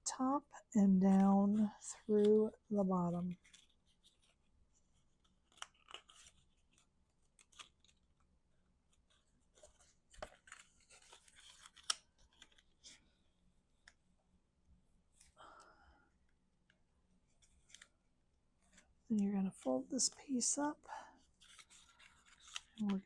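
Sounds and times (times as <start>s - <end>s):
paper rustling: 3.3s - 8.2s, 8.9s - 13.1s, 21.3s - 23.0s.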